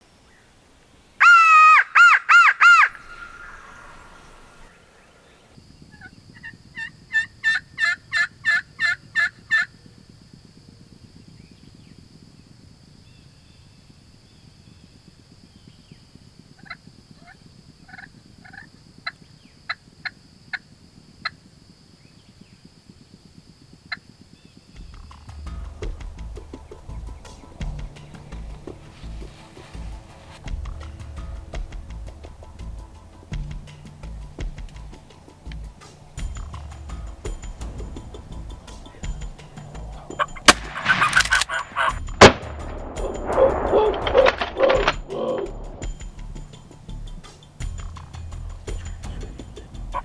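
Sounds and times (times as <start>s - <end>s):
turkey clucks: 1.2s - 4.7s, 6.0s - 9.7s, 16.6s - 20.6s, 38.2s - 42.0s, 48.8s - 50.0s
turkey yelps: 1.2s - 4.7s, 6.0s - 9.7s, 40.2s - 42.0s, 43.4s - 45.6s
turkey gobbling: 1.2s - 5.0s, 6.0s - 9.8s, 16.6s - 20.6s, 38.2s - 42.0s, 43.3s - 45.6s, 48.8s - 50.0s.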